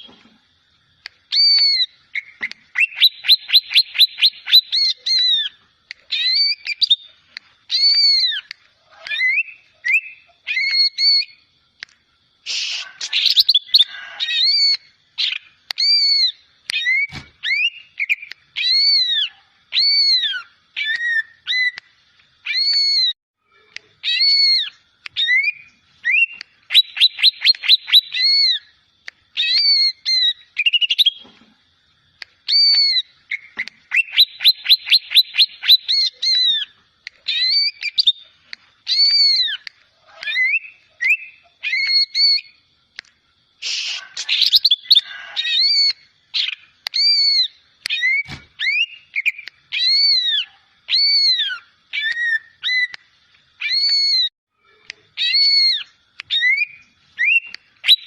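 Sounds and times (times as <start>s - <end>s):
bird whistling song: 1.0s - 11.5s, 12.5s - 23.2s, 24.0s - 31.3s, 32.4s - 42.6s, 43.6s - 54.3s, 55.2s - 58.0s.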